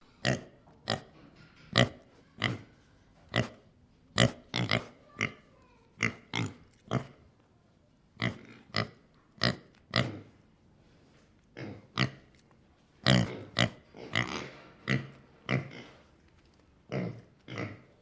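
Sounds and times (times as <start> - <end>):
pig grunting: 13.0 - 16.0, 16.9 - 18.0.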